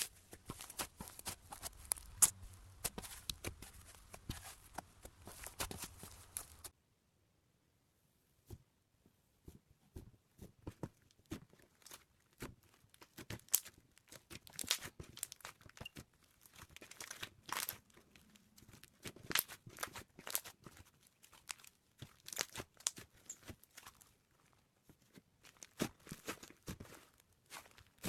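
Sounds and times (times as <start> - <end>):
slime crackling and popping: 0.0 - 6.7, 11.6 - 24.1.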